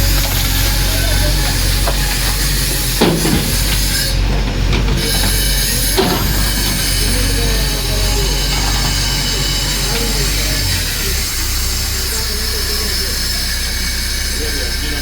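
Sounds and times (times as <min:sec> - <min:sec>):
metallic clanks: 0:00.0 - 0:11.9
diesel engine running: 0:00.0 - 0:15.0.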